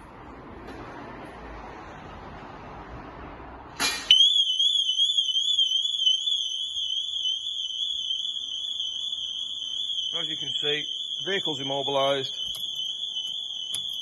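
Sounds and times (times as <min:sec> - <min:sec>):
van alarm siren warbling: 0:04.1 - 0:14.0.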